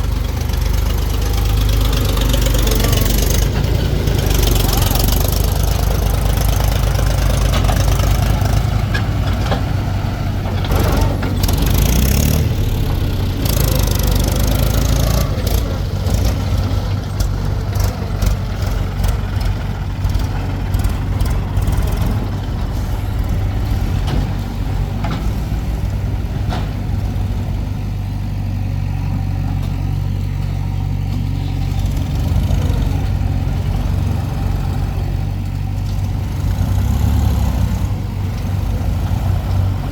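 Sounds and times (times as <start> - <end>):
heavy diesel engine running: 0.0 - 39.9.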